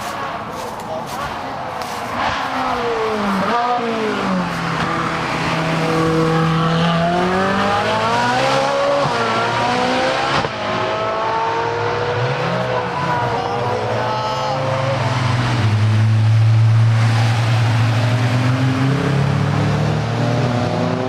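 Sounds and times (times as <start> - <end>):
race car engine accelerating: 2.1 - 21.0.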